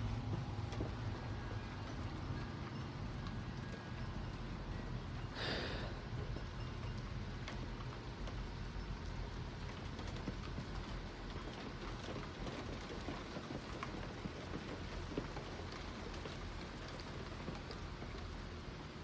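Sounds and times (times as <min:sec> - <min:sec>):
raindrops spattering on surfaces: 0:07.0 - 0:18.7.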